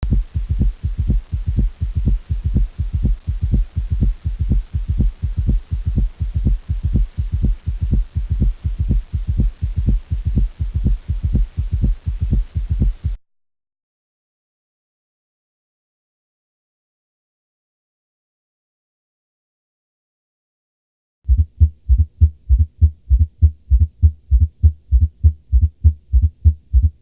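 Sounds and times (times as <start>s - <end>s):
heartbeat thumps: 0.0s - 13.2s, 21.3s - 27.0s
constant low hum: 21.3s - 27.0s.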